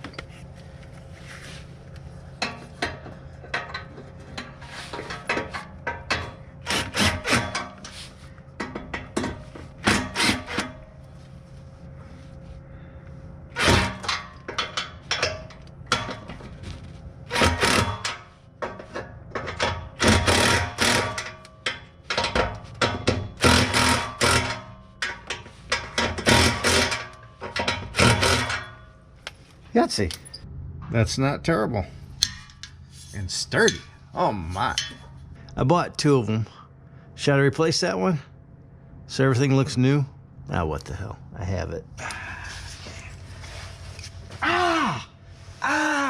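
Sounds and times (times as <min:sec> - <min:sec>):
hand tools clicking and knocking on metal: 0:02.4 - 0:08.0, 0:08.6 - 0:10.8, 0:13.6 - 0:29.4, 0:32.2 - 0:32.8, 0:34.6 - 0:35.1.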